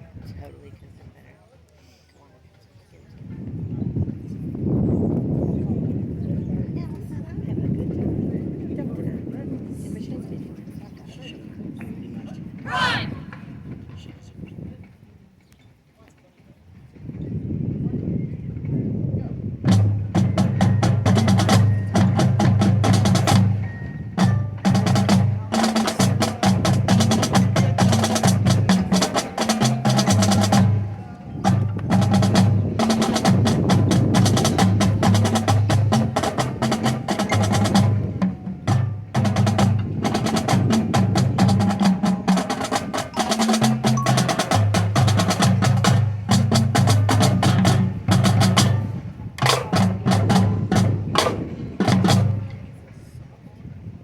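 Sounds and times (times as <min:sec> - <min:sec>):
snare drum rolls: 0:19.7 - 0:52.6.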